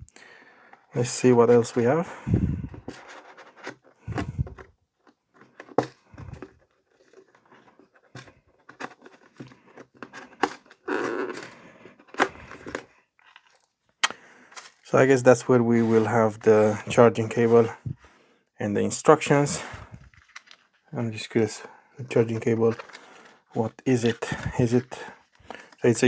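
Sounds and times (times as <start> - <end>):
cardboard box rustling and scraping: 2.5 - 4.7.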